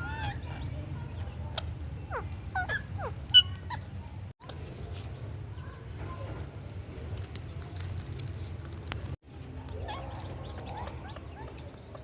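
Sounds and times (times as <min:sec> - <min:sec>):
parrot squeaky chirps: 0:00.0 - 0:00.6, 0:02.0 - 0:03.9.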